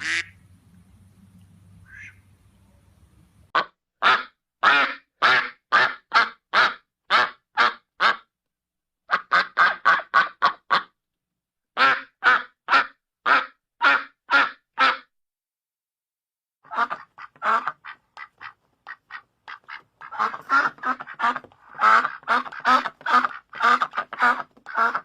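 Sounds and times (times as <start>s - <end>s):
duck quacking: 0.0s - 0.4s, 1.8s - 2.3s, 3.5s - 8.3s, 9.1s - 11.0s, 11.8s - 15.1s, 16.6s - 25.0s.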